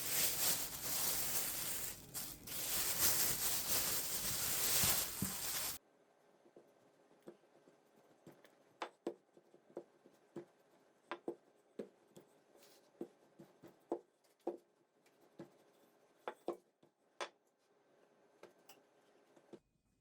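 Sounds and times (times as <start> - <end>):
hands working pastry dough: 0.0 - 5.8.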